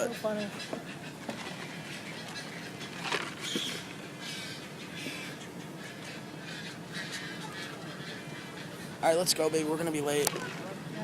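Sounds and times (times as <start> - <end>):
birds calling: 0.0 - 11.0
steady outdoor hiss: 0.0 - 11.0.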